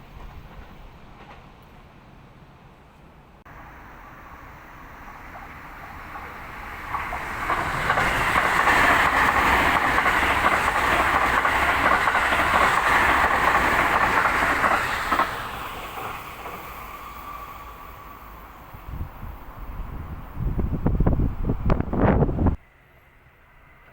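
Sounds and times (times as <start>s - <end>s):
wheels clattering on rails: 0.0s - 1.8s, 5.2s - 16.9s
electric train passing: 0.0s - 23.9s.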